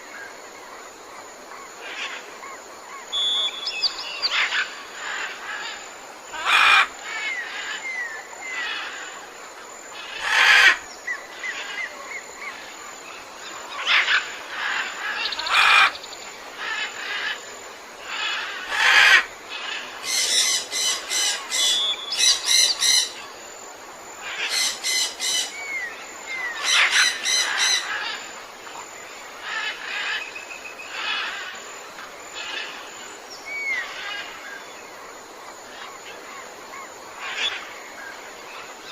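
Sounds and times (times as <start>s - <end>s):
down-slurred whistles: 3.1s - 4.0s
loud harsh bird calls: 3.1s - 9.1s, 18.1s - 23.2s, 24.2s - 28.3s.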